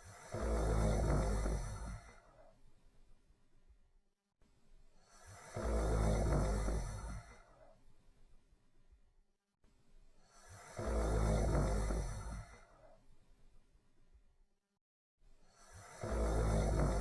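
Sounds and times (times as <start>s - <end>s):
person snoring: 0.0s - 2.5s, 5.0s - 7.7s, 10.2s - 12.9s, 15.4s - 17.0s
breathing: 0.0s - 2.6s, 4.9s - 7.8s, 10.1s - 13.1s, 15.3s - 17.0s.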